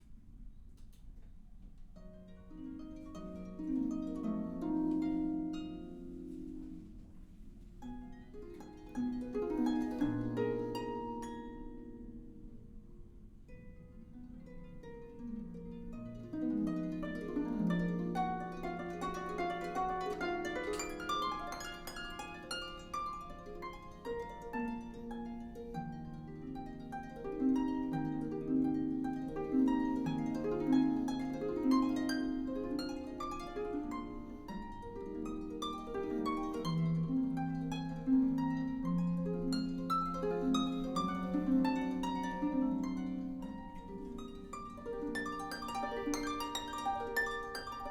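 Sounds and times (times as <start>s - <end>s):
harp plucked notes: 13.5s - 47.9s.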